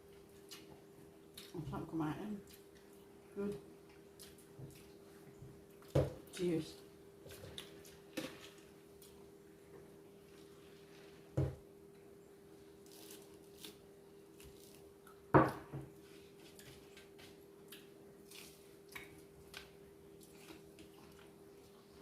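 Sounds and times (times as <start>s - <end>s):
people chewing food: 0.0s - 1.8s, 2.4s - 6.5s, 7.2s - 12.1s, 16.0s - 22.0s
faint steady hum: 0.0s - 22.0s.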